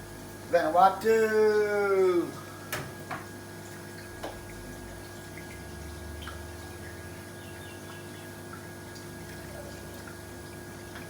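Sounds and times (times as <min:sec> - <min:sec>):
water dripping and trickling: 0:03.5 - 0:11.0.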